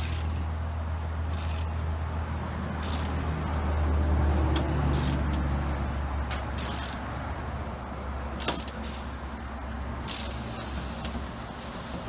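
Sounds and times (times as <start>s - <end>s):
ratchet wrench ratcheting: 0.0s - 0.4s, 1.3s - 1.8s, 2.8s - 3.2s, 4.9s - 5.4s, 6.5s - 7.1s, 8.4s - 8.8s, 10.0s - 10.5s
steady low hum: 0.0s - 12.0s.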